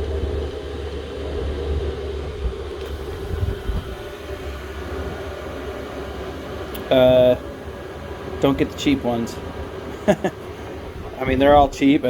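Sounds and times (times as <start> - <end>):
air heater blower humming: 0.0 - 12.0.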